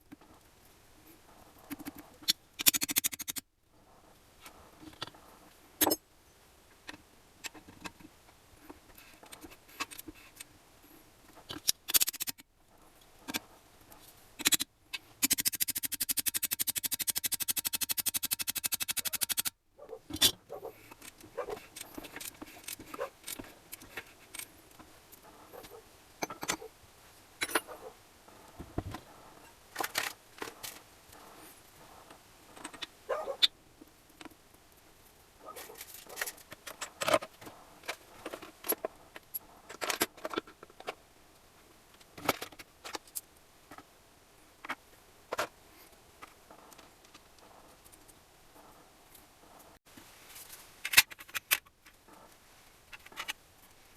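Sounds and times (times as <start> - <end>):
metal tools clinking and scraping: 5.8 - 6.0, 25.6 - 26.7, 27.4 - 27.8
rapid even clicks: 14.4 - 19.5.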